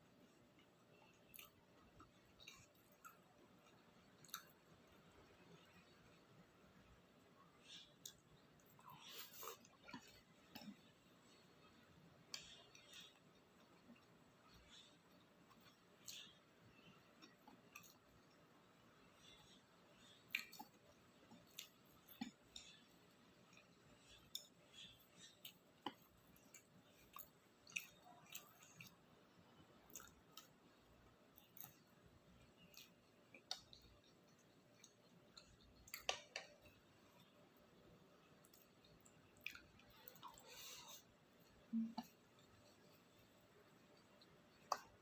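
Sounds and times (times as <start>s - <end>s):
wet mouth chewing smacks: 38.4s - 41.0s.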